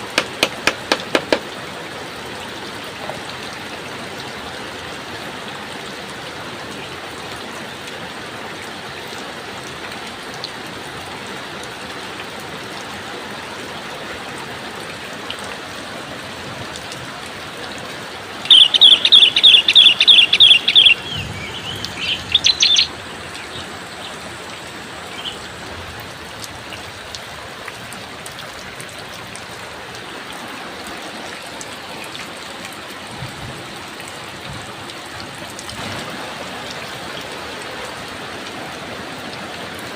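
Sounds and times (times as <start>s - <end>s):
steady rain: 0.0s - 39.9s
bird chirping: 18.5s - 24.2s, 25.1s - 25.4s.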